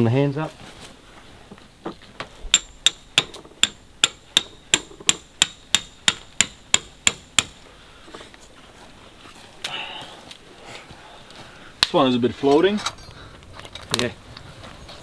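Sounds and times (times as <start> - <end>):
hammer striking metal tent peg: 2.5 - 7.6.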